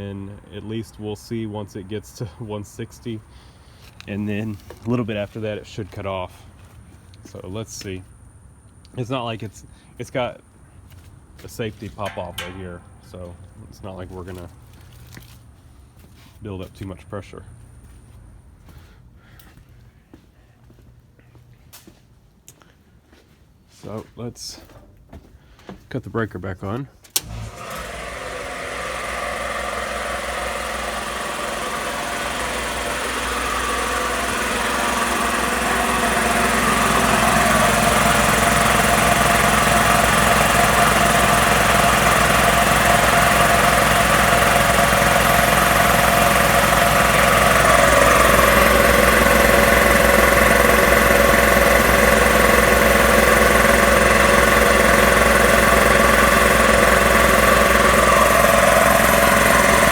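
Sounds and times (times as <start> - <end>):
air compressor running: 11.9 - 16.1, 27.1 - 59.9.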